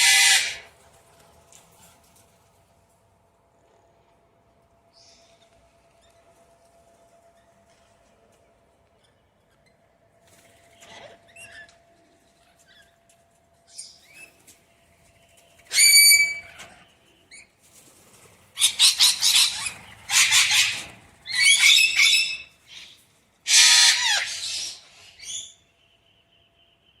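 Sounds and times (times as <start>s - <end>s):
parrots screeching: 0.0s - 0.7s, 15.7s - 16.7s, 18.6s - 25.5s.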